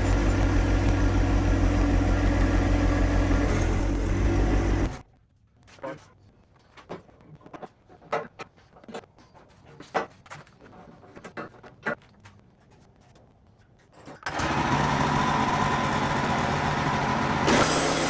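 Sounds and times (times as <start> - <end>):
sawmill engine running: 0.0 - 5.0, 14.3 - 18.0.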